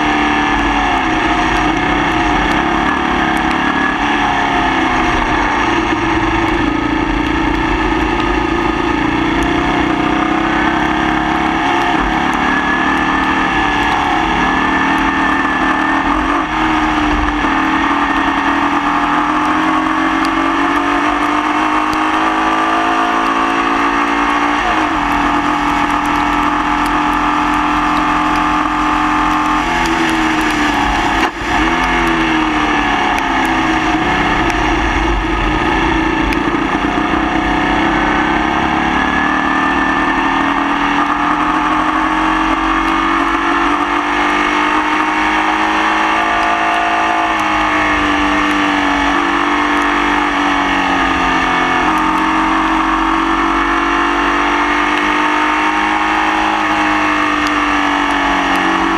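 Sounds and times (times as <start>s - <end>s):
race car engine at speed: 0.0s - 58.9s.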